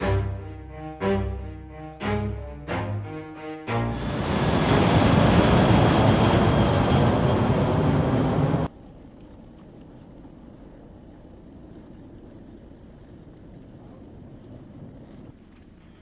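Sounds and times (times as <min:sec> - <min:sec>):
music chord: 0:00.0 - 0:05.5
loud engine noise: 0:02.1 - 0:08.7.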